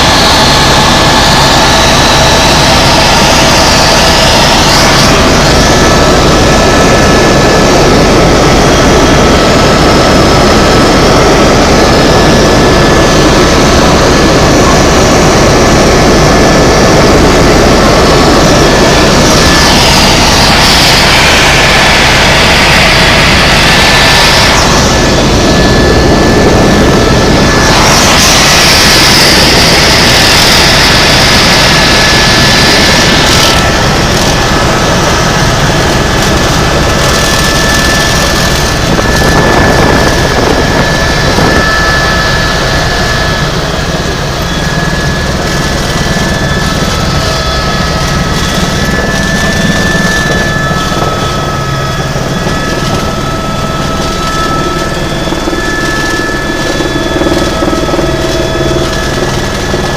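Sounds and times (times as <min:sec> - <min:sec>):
helicopter rotor and engine noise: 0:00.0 - 0:59.9
high turbine whine: 0:00.0 - 0:59.9
rotor throb: 0:00.0 - 0:59.9.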